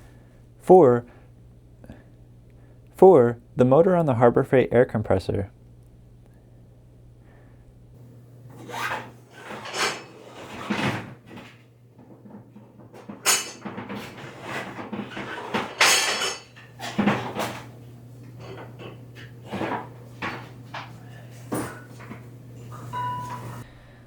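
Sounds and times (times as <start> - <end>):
steady low hum: 0.0 - 10.1, 15.7 - 24.0
objects clattering and scraping: 8.4 - 23.6.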